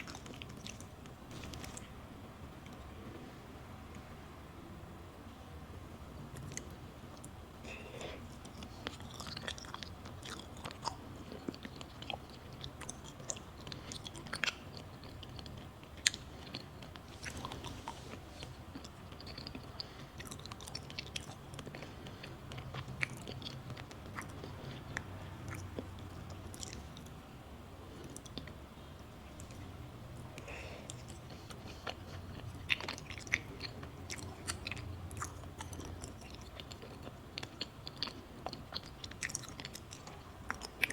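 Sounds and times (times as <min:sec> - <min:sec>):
chewing and biting: 0:00.0 - 0:01.9, 0:06.3 - 0:27.2, 0:30.4 - 0:40.9.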